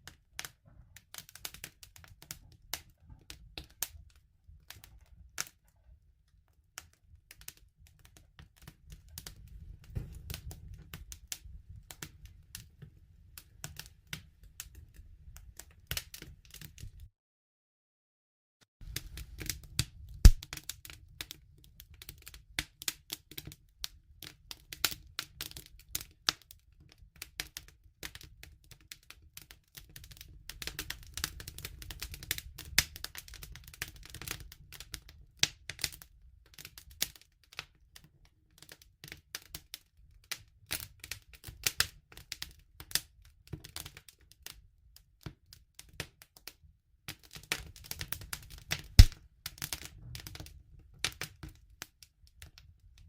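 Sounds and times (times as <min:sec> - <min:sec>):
campfire crackling: 0:18.8 - 0:21.3, 0:47.6 - 0:50.4.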